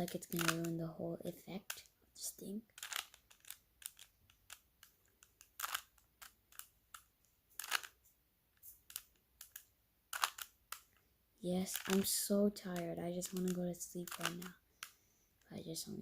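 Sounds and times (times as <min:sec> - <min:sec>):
rubik's cube plastic clicks: 0:00.0 - 0:15.6.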